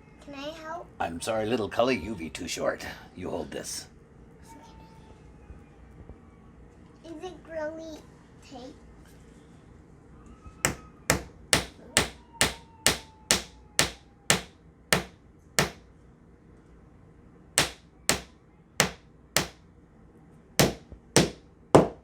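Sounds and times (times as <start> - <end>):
hammer tapping wooden dowel: 10.7 - 15.8, 17.6 - 19.6, 20.6 - 22.0.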